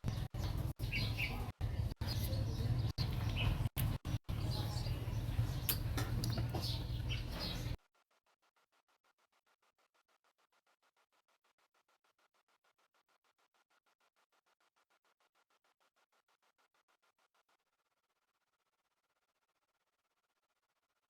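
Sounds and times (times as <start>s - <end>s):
faint bird chirps: 0.0s - 7.8s.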